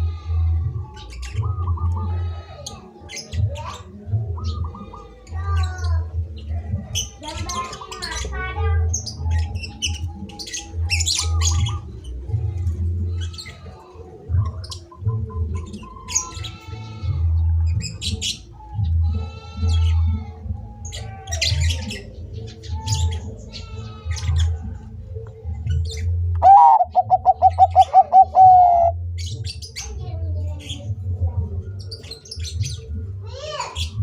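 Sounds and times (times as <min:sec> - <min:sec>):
small birds chirping: 0:00.0 - 0:34.0
doves cooing: 0:03.7 - 0:05.4, 0:09.1 - 0:29.1.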